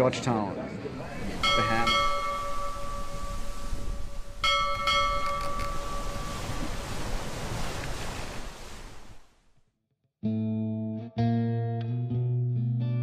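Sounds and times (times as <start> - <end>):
two-note bell chime: 1.4 - 6.6.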